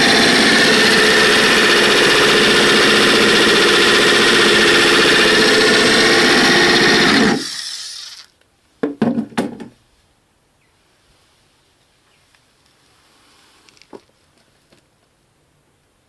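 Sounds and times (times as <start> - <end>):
machine running with buzzing whine: 0.0 - 7.9.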